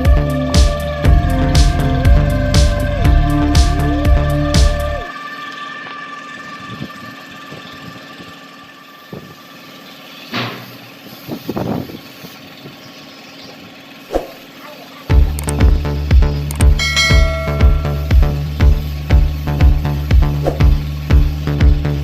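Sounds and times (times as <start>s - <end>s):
air compressor humming: 15.1s - 22.0s.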